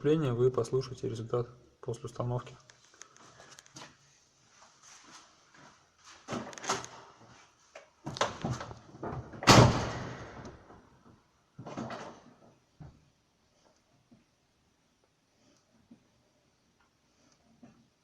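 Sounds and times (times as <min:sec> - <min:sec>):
loud slam: 0:09.4 - 0:10.4.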